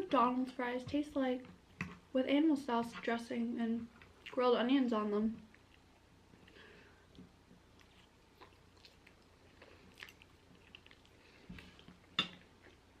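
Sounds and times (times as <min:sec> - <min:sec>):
person chewing: 0:05.5 - 0:13.0.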